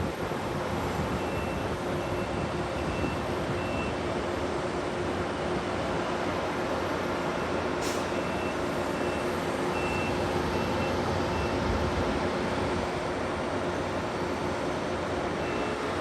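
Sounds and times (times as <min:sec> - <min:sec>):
reversing alarm beeps: 0:01.1 - 0:04.0, 0:07.4 - 0:11.7, 0:15.4 - 0:16.0.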